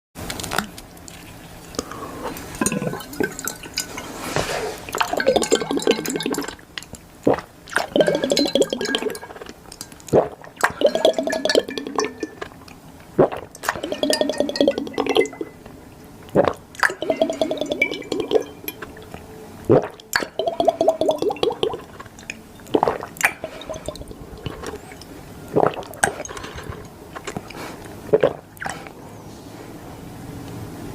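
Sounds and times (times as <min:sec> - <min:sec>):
water pouring into glass: 0:02.5 - 0:06.7, 0:07.3 - 0:12.6, 0:13.2 - 0:15.7, 0:16.4 - 0:26.7.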